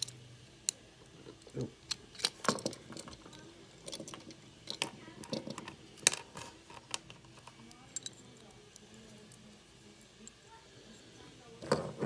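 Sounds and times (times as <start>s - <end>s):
toy car parts clicking: 0.0s - 9.6s.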